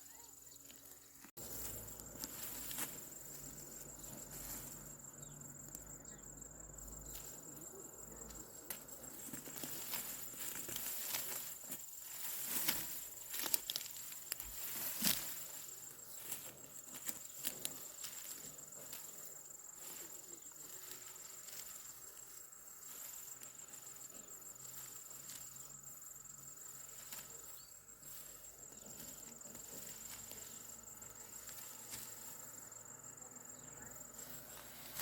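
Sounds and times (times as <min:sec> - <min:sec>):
rice stalks rustling and snapping: 0:00.6 - 0:03.5, 0:08.6 - 0:19.1, 0:34.2 - 0:35.0
steady high-pitched whine: 0:01.2 - 0:35.0.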